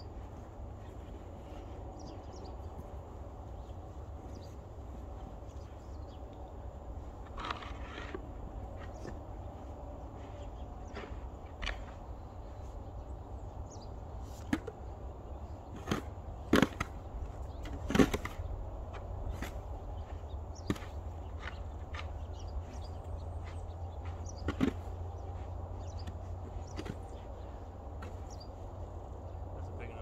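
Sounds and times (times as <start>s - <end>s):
sharp knocks and cracks: 15.7s - 18.5s.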